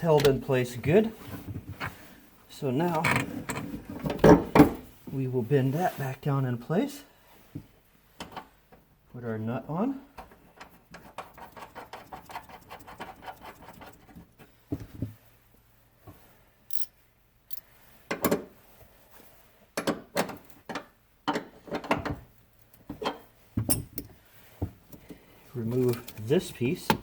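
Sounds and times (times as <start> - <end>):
metal tools clinking: 16.7 - 16.9.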